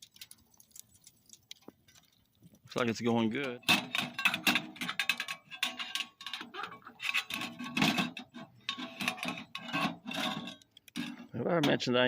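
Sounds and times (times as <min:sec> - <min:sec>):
metal stove clicks and clanks: 0:03.4 - 0:11.8.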